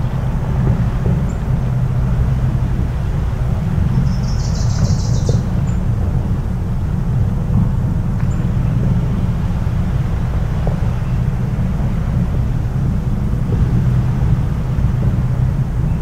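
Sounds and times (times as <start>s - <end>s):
steady low coastal rumble: 0.0s - 16.0s
bird chirp: 4.0s - 5.4s.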